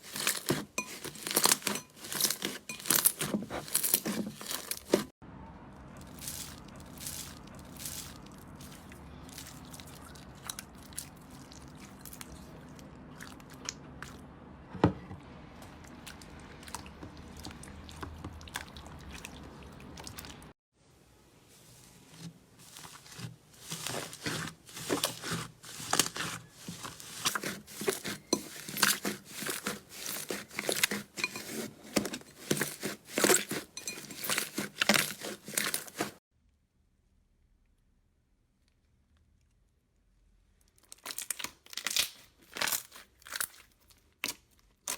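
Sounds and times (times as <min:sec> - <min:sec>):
slime crackling and popping: 0:40.8 - 0:44.9.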